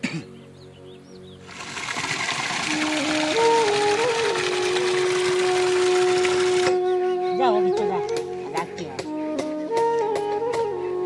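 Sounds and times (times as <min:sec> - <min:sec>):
water hissing: 0:01.4 - 0:06.8
flute-like melody: 0:02.4 - 0:11.0.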